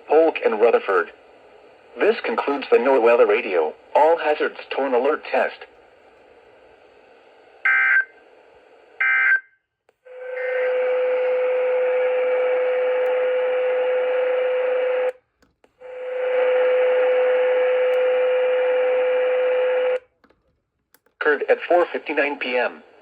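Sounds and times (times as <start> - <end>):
loud steady radio hiss: 0.0 - 20.1, 21.2 - 23.0
constant low hum tone: 0.0 - 23.0
shrill digital warbles: 10.2 - 11.6.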